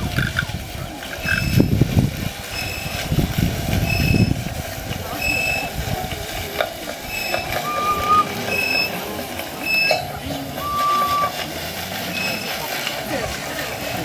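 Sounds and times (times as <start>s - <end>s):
low rumbling noise: 0.0s - 14.0s
animal call beeping: 7.1s - 11.4s, 12.1s - 12.6s.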